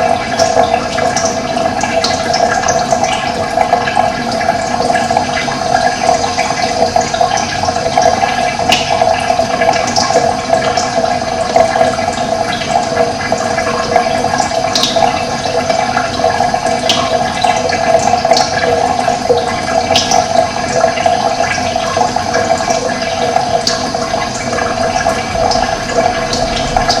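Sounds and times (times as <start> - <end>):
water rushing: 22.6 - 27.0.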